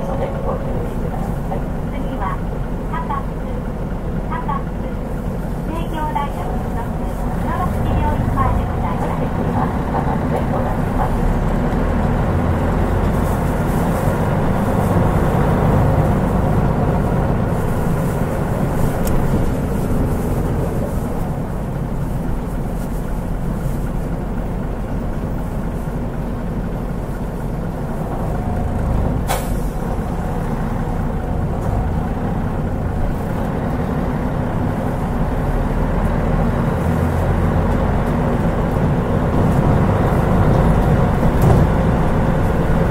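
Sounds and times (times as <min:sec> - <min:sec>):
bus diesel engine drone: 0:00.0 - 0:42.9.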